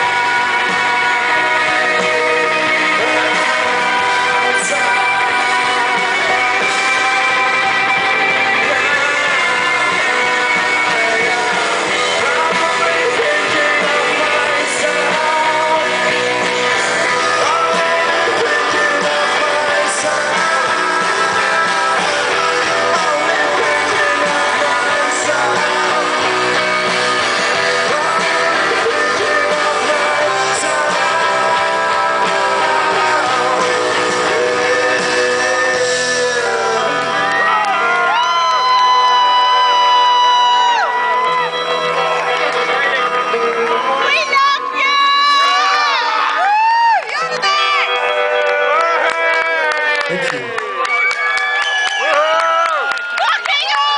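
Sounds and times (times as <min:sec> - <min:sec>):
person singing: 0:00.0 - 0:50.8
live rock band: 0:00.0 - 0:53.9.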